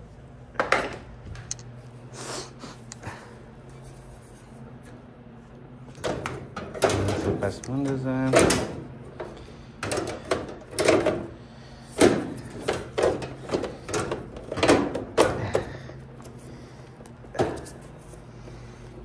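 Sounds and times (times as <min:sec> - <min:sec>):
metal parts knocking and clunking: 0:05.9 - 0:11.3, 0:12.0 - 0:15.7.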